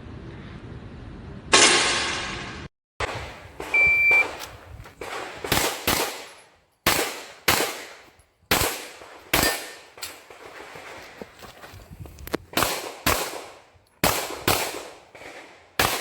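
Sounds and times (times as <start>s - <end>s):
pistol shots echoing: 3.0s - 10.8s, 12.6s - 16.0s
short high beep: 3.7s - 4.4s.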